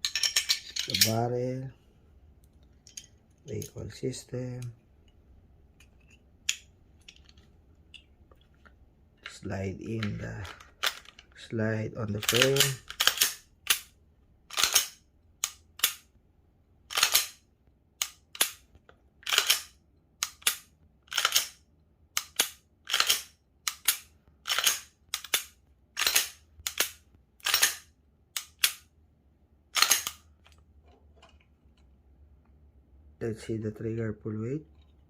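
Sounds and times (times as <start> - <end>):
pistol slide racking: 12.2 - 13.9, 14.5 - 16.0, 19.2 - 21.6, 22.2 - 28.8, 29.8 - 30.2
pistol trigger dry-fire clicks: 18.0 - 18.6, 22.2 - 27.8, 28.4 - 28.9.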